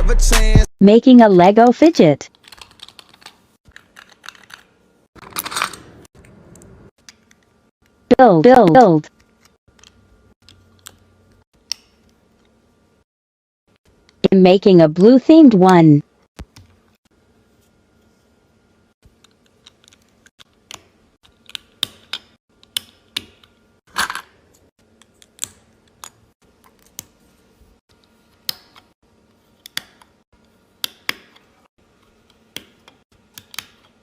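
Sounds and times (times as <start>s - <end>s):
rattle of plastic pieces: 2.4s - 5.9s.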